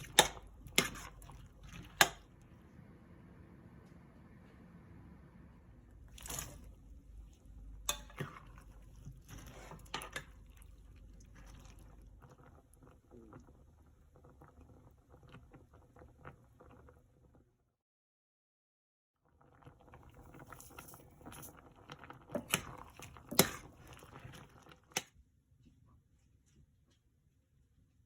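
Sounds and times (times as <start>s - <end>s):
pot knocks and scrapes: 0.0s - 2.3s, 7.8s - 10.6s, 22.3s - 25.0s.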